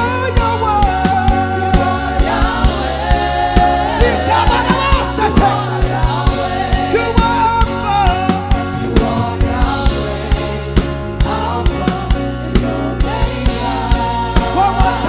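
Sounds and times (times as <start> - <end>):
bass: 0.0 - 15.0
choir and congregation singing: 0.0 - 15.0
keyboard: 0.0 - 15.0
steady drum beat: 0.0 - 15.0.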